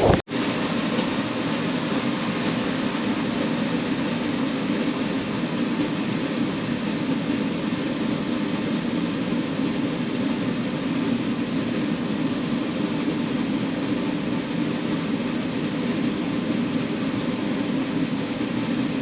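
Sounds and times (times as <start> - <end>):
hurricane wind: 0.0 - 19.0.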